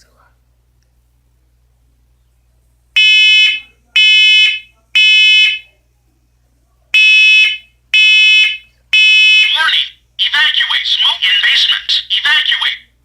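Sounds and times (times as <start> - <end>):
smoke alarm beeping: 3.0 - 5.7, 7.0 - 9.9.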